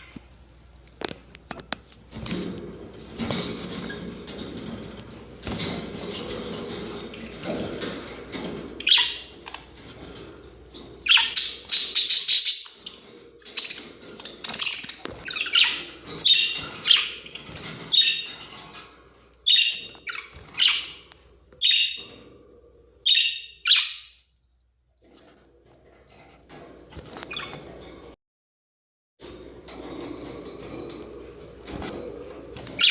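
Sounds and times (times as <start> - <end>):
parrots chirping: 8.8 - 10.1, 11.0 - 22.2, 23.0 - 24.2, 32.6 - 32.9.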